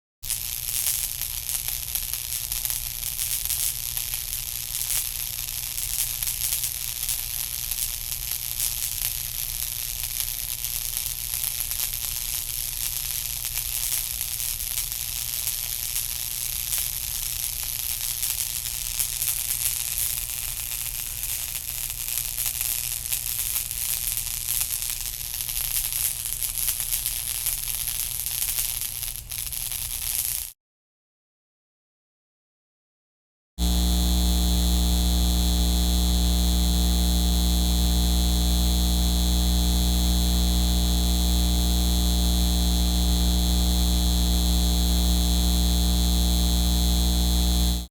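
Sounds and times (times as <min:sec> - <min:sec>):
crackling static hiss: 0:00.3 - 0:30.5, 0:33.6 - 0:47.9
low hum: 0:33.6 - 0:47.9.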